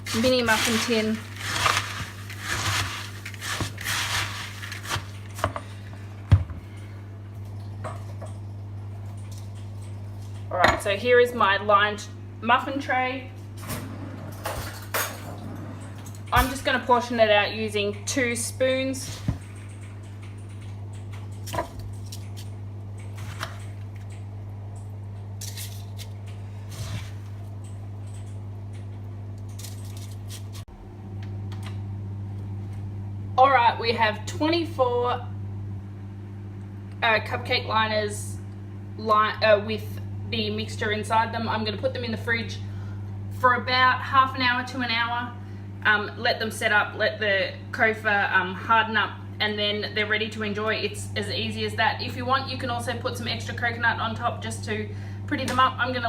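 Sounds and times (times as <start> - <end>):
spoon stirring crunchy puffed rice: 0.0 - 5.4
low electrical hum: 0.0 - 56.0.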